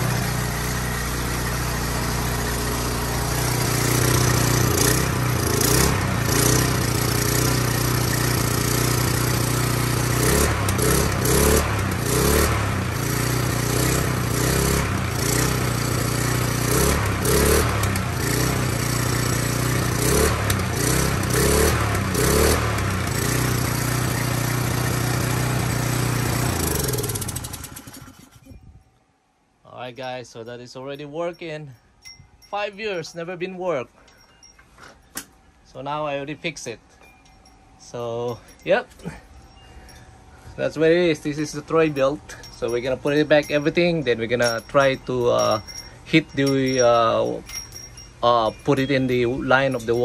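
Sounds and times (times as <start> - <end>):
small engine running: 0.0 - 28.6.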